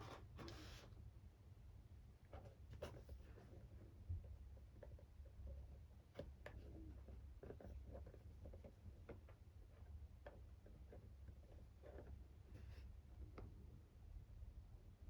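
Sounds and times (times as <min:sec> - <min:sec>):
faint clicks and light taps: 0:04.1 - 0:12.2, 0:13.2 - 0:13.6.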